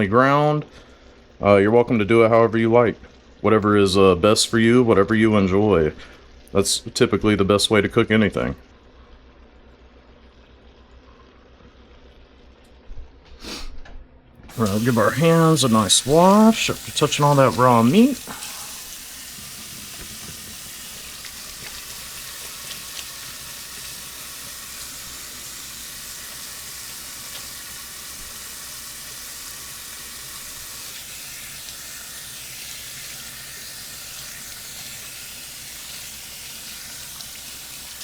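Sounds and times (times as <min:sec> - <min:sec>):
meat sizzling in a pot: 0:14.5 - 0:38.0.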